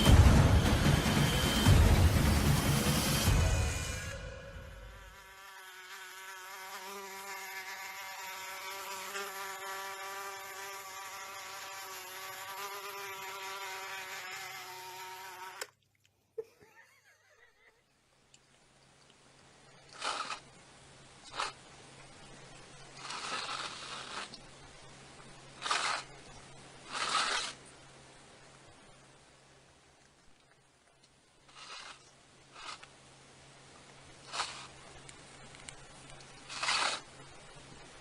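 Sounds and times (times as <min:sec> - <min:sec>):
wavering buzz: 0:00.0 - 0:15.7.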